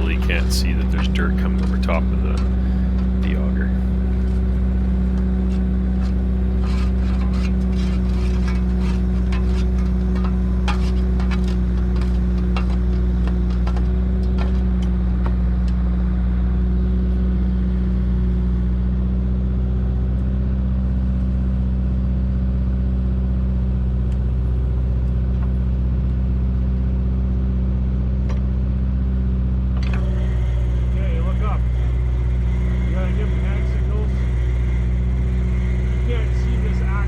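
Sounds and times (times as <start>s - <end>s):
auger rig engine running: 0.0s - 16.8s, 29.3s - 37.0s.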